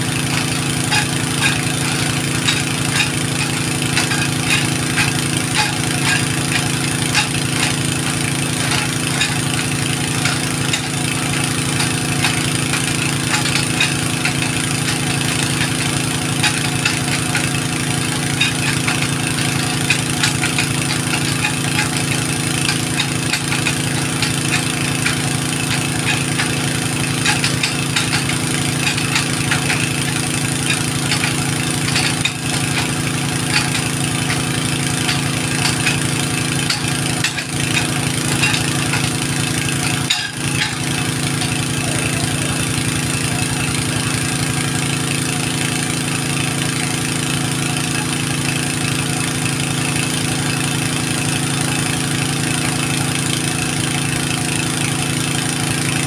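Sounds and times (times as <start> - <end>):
engine idling with ticking beat: 0.0 - 56.0.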